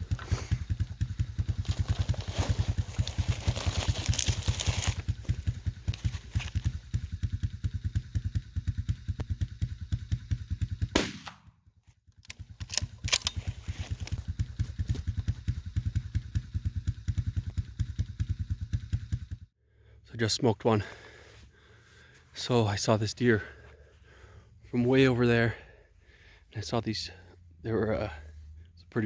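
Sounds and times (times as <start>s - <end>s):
four-wheeler engine idling: 0.0s - 11.1s, 12.1s - 29.0s
rifle shot: 10.9s - 11.5s.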